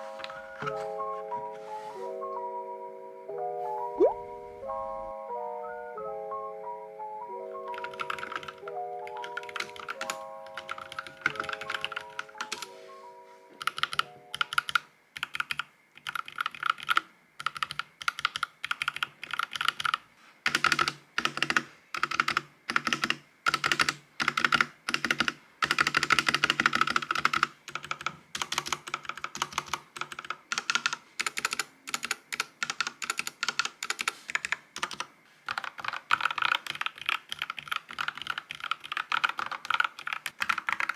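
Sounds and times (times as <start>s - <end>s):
soft bell-like background music: 0.0s - 14.4s
mechanical keyboard typing: 7.7s - 12.7s, 13.6s - 40.9s.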